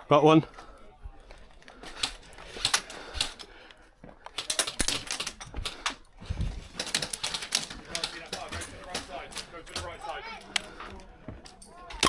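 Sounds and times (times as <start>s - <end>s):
airsoft guns firing bursts: 1.8s - 3.6s, 4.3s - 10.8s.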